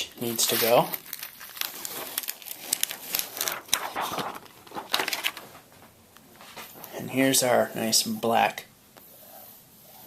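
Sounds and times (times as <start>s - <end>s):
plastic film crinkling: 0.2s - 5.9s.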